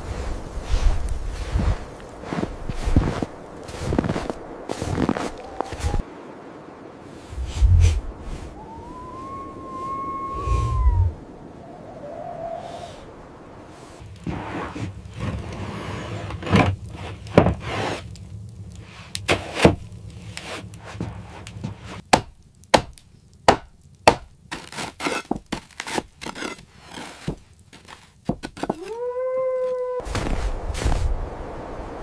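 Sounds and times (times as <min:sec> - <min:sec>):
held rising tone: 0:07.4 - 0:13.4.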